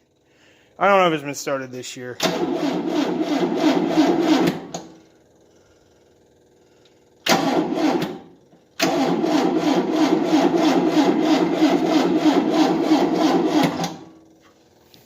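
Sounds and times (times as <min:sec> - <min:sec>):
starter cranking engine: 0:02.2 - 0:05.0, 0:07.2 - 0:14.2.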